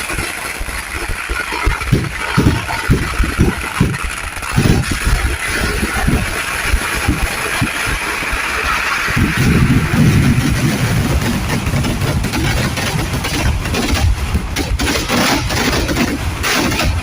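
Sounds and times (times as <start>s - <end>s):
firecrackers going off: 0.0s - 17.0s.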